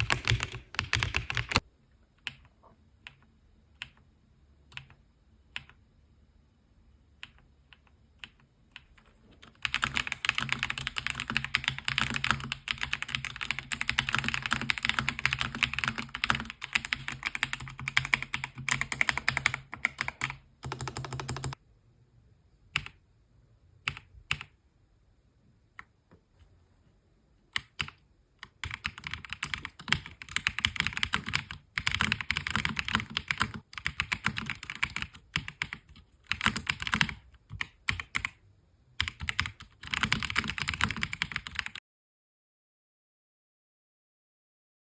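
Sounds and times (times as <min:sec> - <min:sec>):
mechanical keyboard typing: 0:00.0 - 0:02.5, 0:07.2 - 0:21.6, 0:23.9 - 0:24.6, 0:27.6 - 0:38.4, 0:39.0 - 0:41.8.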